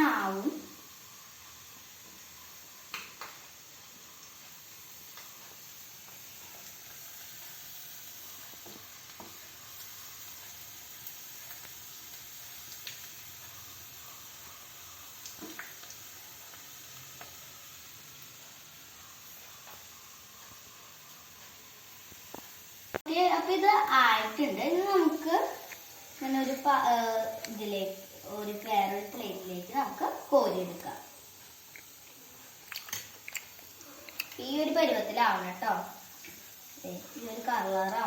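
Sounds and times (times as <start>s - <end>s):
squid deep-frying in oil: 0.0s - 38.0s
oil popping: 15.2s - 17.4s, 29.8s - 34.8s.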